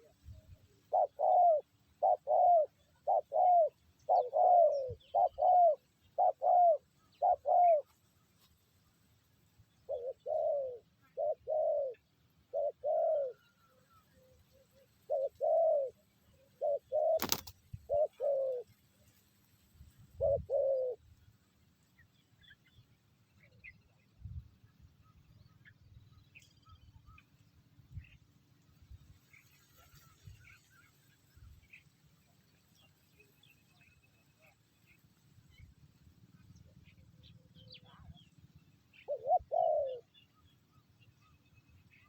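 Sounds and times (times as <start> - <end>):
dove cooing: 0.0 - 7.9, 9.8 - 18.8, 20.1 - 21.1, 36.9 - 40.4.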